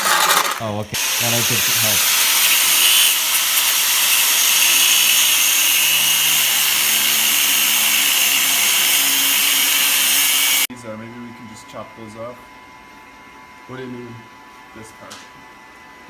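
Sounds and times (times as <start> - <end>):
power grinder cutting steel: 0.0 - 10.7.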